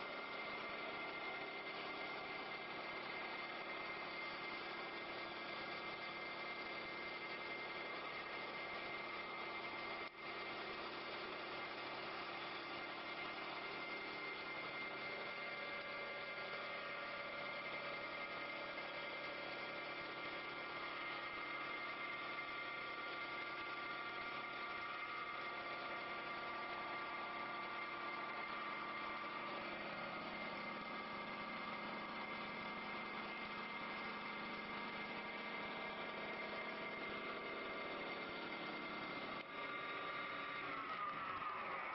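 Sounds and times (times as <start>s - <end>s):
wood lathe humming and whining: 0.0s - 41.9s.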